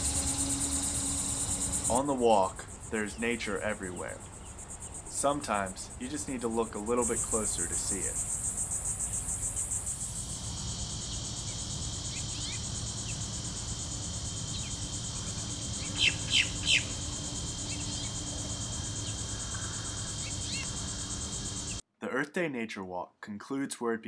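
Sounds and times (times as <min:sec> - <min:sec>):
insects trilling: 0:00.0 - 0:21.8
bird chirping: 0:11.0 - 0:13.2, 0:14.4 - 0:21.8.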